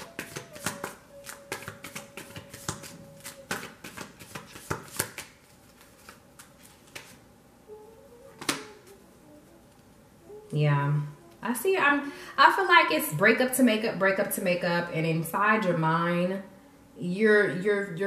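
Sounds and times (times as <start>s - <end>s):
cards being shuffled: 0.0s - 7.2s
card snap: 8.4s - 8.9s.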